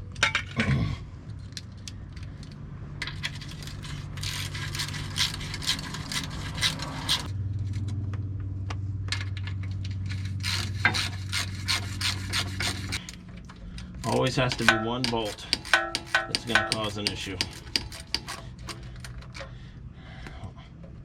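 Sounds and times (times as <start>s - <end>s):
hand ratchet clicking: 1.6s - 7.3s, 9.8s - 13.1s, 14.0s - 19.5s.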